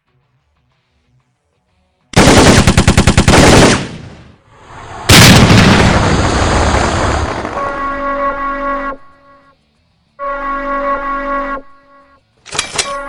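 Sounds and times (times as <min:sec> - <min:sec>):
automatic gunfire burst: 0:02.2 - 0:04.2
loud blast: 0:03.4 - 0:08.4.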